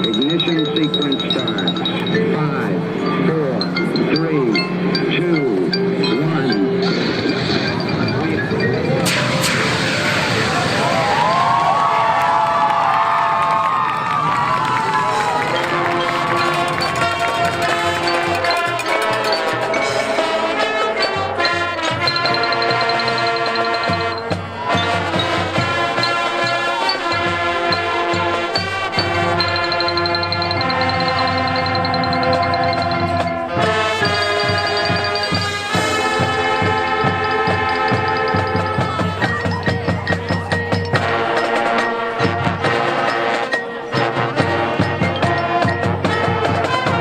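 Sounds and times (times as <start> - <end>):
brass chords: 15.1 - 39.4, 40.9 - 47.0
steady drum beat: 21.1 - 42.9.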